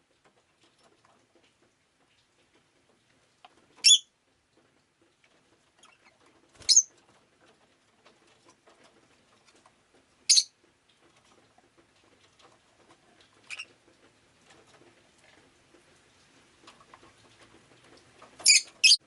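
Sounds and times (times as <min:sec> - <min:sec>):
lovebird chirping: 0:03.8 - 0:04.1, 0:06.6 - 0:06.9, 0:10.3 - 0:10.5, 0:18.4 - 0:19.0.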